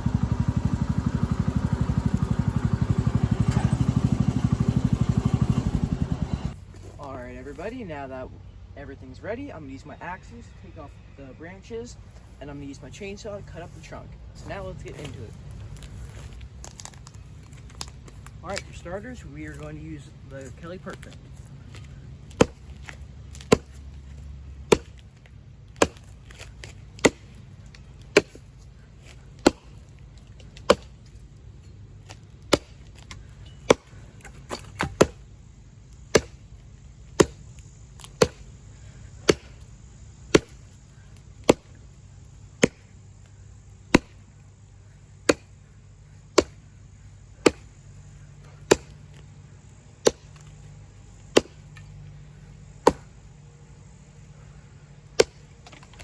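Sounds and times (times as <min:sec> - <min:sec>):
axe chopping branches: 0:14.4 - 0:43.2, 0:43.8 - 0:44.4, 0:45.2 - 0:53.3, 0:55.0 - 0:56.0.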